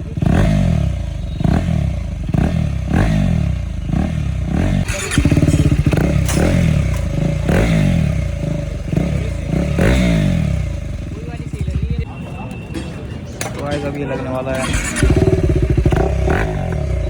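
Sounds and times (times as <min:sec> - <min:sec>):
motorcycle engine revving: 0:00.0 - 0:12.7, 0:14.4 - 0:17.0.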